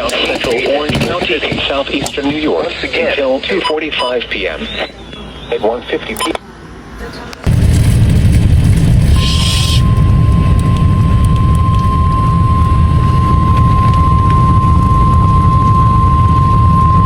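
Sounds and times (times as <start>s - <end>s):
steady high alarm beep: 3.5s - 5.6s, 9.2s - 17.0s
heavy low rumble: 7.4s - 17.0s.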